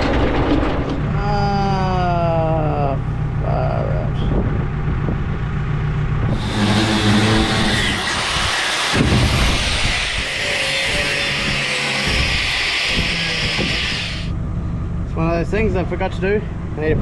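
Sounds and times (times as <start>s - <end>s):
loud rushing noise: 6.3s - 14.3s.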